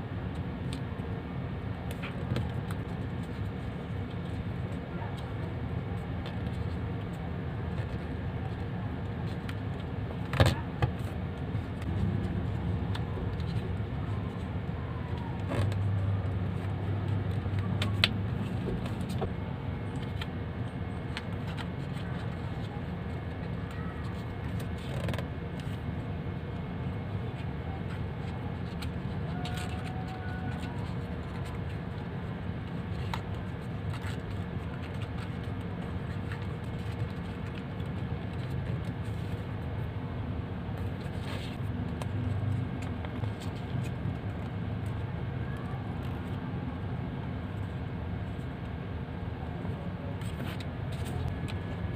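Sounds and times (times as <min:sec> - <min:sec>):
low background rumble: 0:00.0 - 0:51.9
paper creasing crackles: 0:27.2 - 0:39.7
paper being folded: 0:27.3 - 0:39.7.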